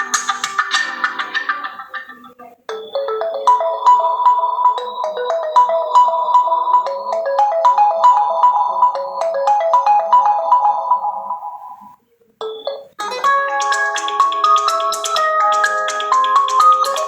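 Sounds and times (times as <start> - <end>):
bright phone alarm tone: 2.7 - 15.0
phone alarm melody: 2.7 - 17.0.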